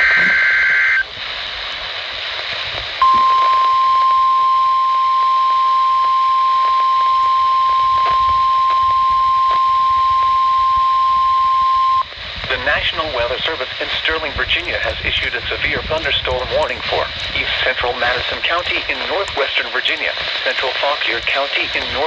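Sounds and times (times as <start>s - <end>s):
steady warning alarm tone: 0.0s - 1.0s, 3.0s - 12.1s
radio hiss: 0.0s - 22.0s.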